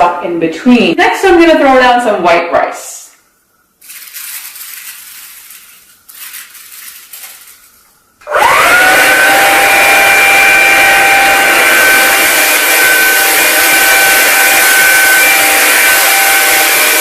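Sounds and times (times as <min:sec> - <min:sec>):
stick vacuum motor whine: 0:08.2 - 0:17.0.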